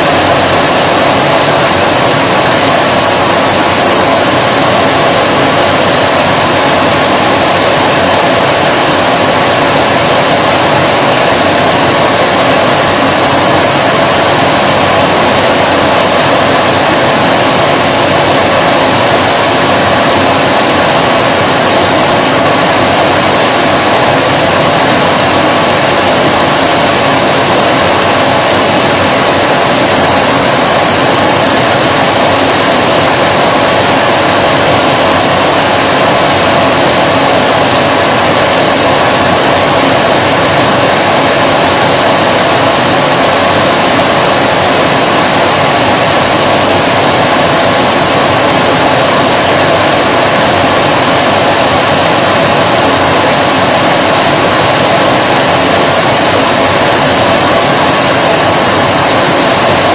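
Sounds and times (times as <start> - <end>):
vacuum cleaner running: 0.0 - 59.9.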